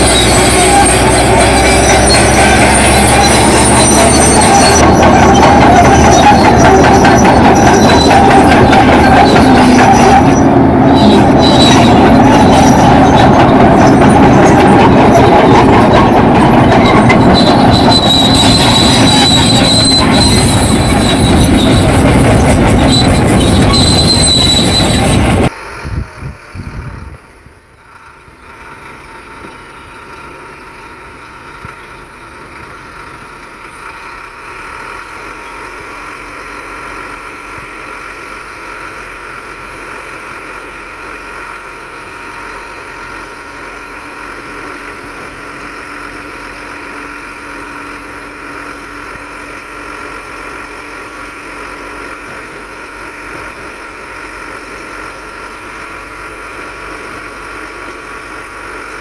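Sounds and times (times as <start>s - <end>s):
high whine: 0.0s - 25.5s
diesel engine running: 0.0s - 59.0s.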